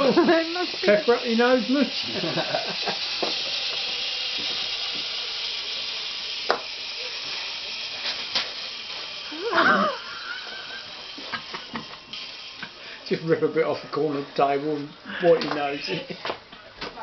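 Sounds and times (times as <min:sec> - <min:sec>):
steady background hiss: 0:00.0 - 0:17.0.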